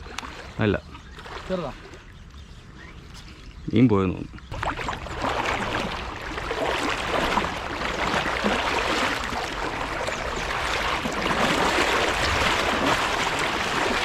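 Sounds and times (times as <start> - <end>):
water lapping around boat: 0.0 - 14.0
water rushing: 4.5 - 14.0.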